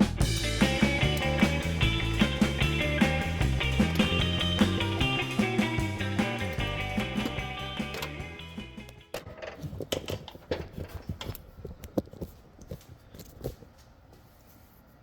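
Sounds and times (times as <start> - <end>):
rock music: 0.0 - 9.1.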